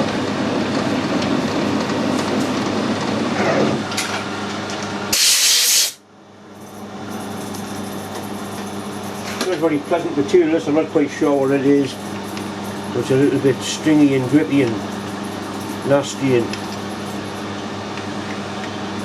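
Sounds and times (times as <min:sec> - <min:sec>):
short loud hiss: 0:05.1 - 0:06.0
low steady hum: 0:06.1 - 0:18.1
metal lathe running: 0:06.6 - 0:19.0.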